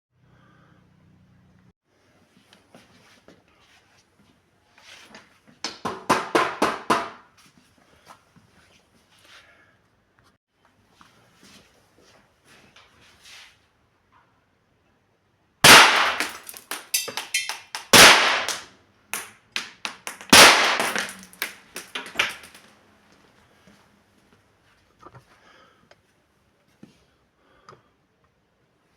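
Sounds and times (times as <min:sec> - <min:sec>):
pistol shots: 0:15.6 - 0:18.6, 0:20.0 - 0:22.5
clatter of small knocks: 0:16.1 - 0:18.6, 0:19.2 - 0:22.7.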